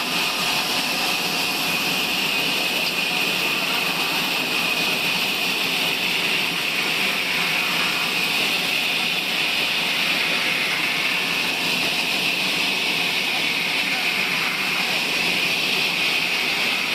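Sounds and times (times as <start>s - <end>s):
sawmill saw whining: 0.0s - 16.9s.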